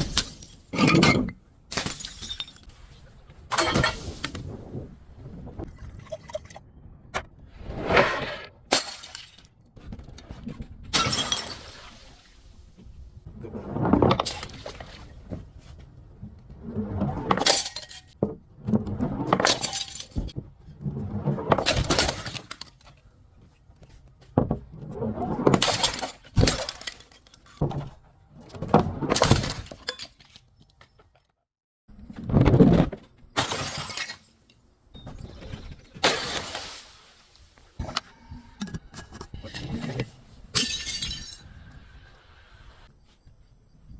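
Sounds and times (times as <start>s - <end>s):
glass bottles shattering: 0.0s - 2.8s, 8.7s - 9.4s, 11.0s - 12.0s, 17.4s - 18.2s, 19.5s - 20.3s, 33.4s - 34.4s, 36.0s - 36.9s, 40.5s - 41.5s
tinkling glass debris: 1.8s - 2.7s, 40.6s - 41.5s.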